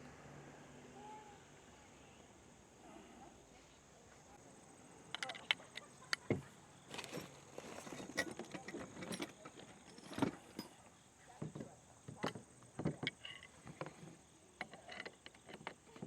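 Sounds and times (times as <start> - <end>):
metal tools clinking and rattling: 6.9 - 16.0.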